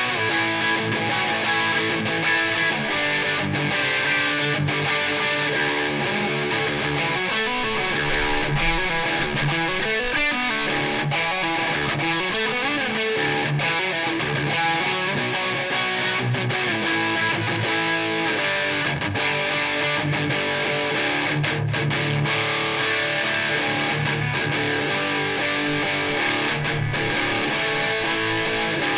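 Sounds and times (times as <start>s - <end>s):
electric guitar through an amp: 0.0s - 28.9s.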